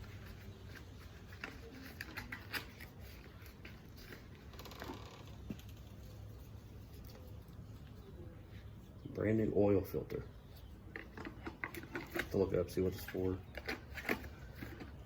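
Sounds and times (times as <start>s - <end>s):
rummaging through a box: 10.8s - 15.0s.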